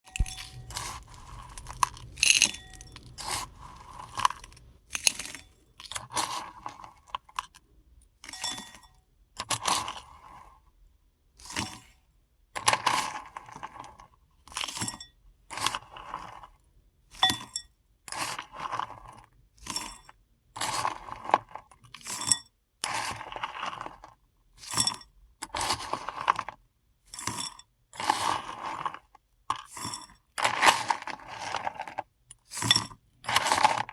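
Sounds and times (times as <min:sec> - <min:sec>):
tablets clattering and crunching: 0:00.1 - 0:07.6, 0:24.7 - 0:26.6, 0:27.2 - 0:33.9.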